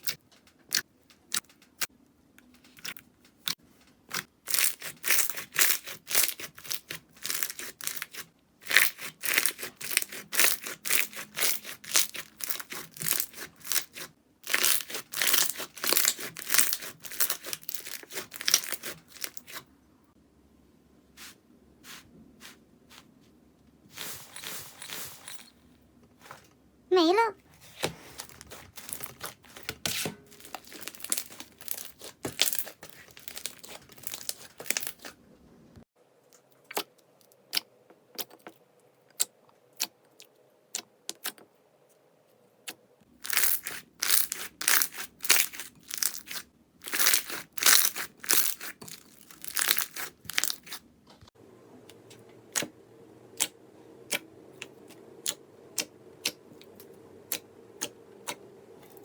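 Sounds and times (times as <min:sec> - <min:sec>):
slime crackling and popping: 0:04.5 - 0:19.6, 0:30.4 - 0:35.1, 0:43.2 - 0:50.8.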